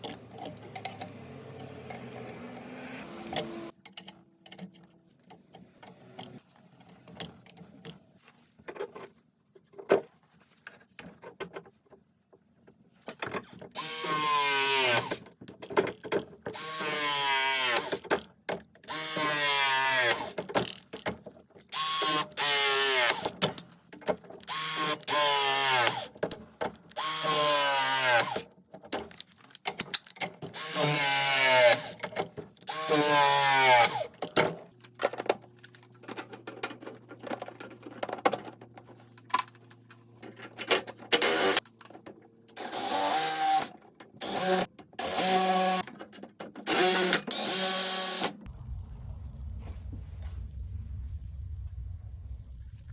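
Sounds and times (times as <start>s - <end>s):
power tool motor bursts: 13.8s - 15.2s, 16.6s - 18.0s, 18.9s - 20.4s, 21.8s - 23.3s, 24.5s - 26.1s, 27.0s - 28.4s, 30.6s - 32.0s, 32.7s - 34.1s, 41.1s - 41.6s, 42.6s - 45.8s, 46.6s - 48.4s.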